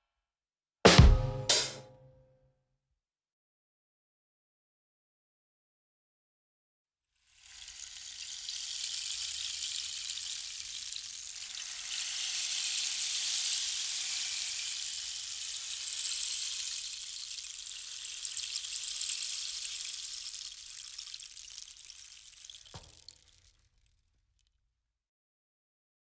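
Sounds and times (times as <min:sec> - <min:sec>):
high-pitched hiss: 0:07.3 - 0:23.2.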